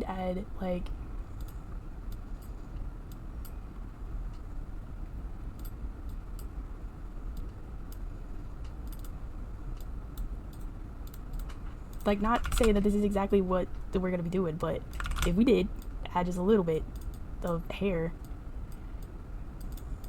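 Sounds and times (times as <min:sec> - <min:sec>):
steady low hum: 0:00.0 - 0:20.0
computer mouse and keyboard clicks: 0:08.8 - 0:12.9, 0:14.9 - 0:15.9.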